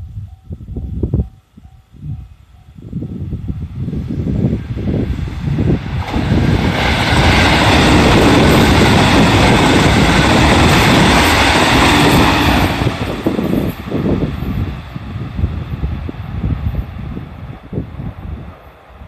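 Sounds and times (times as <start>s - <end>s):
electric train passing: 0.0s - 19.0s.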